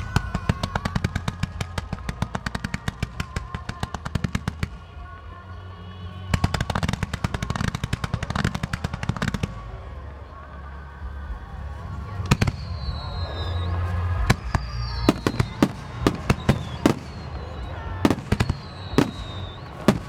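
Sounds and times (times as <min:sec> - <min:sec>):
fireworks cracking: 0:00.0 - 0:20.0.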